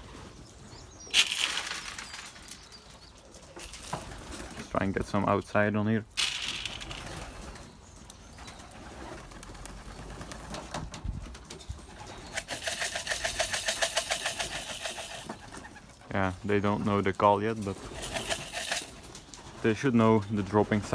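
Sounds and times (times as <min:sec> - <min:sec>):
grains rattling in a container: 0:01.1 - 0:02.8, 0:03.6 - 0:04.4, 0:06.1 - 0:07.5, 0:12.3 - 0:15.5, 0:17.7 - 0:19.2.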